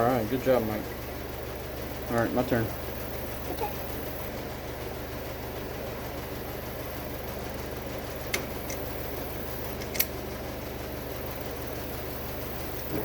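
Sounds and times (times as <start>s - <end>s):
low mechanical hum: 0.0s - 13.0s
hand tool clicks: 9.8s - 10.1s.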